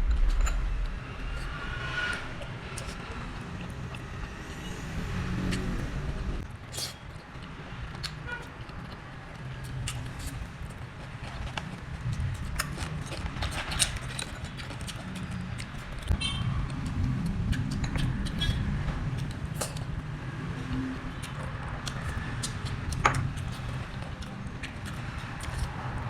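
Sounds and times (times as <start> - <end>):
low background rumble: 0.0 - 6.5.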